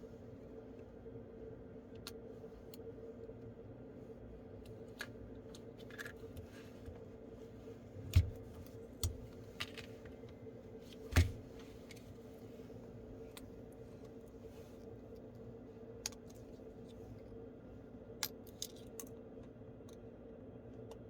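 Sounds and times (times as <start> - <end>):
faint steady hum: 0.0 - 21.0
small clicks and taps of tools: 16.0 - 17.0.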